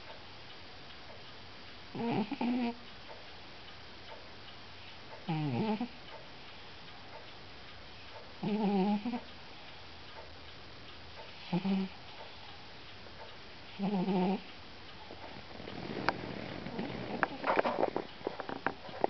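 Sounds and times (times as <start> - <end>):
cat snoring: 2.0 - 2.8, 5.3 - 6.0, 8.4 - 9.2, 11.4 - 12.0, 13.8 - 14.5.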